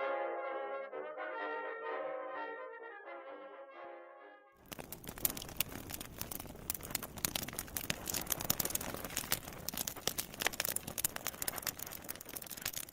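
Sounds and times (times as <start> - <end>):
fire crackling: 4.6 - 12.9.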